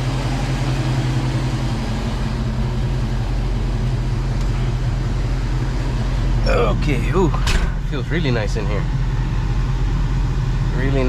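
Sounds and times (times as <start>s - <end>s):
air conditioning compressor running: 0.0s - 11.0s
car engine idling: 0.0s - 11.0s.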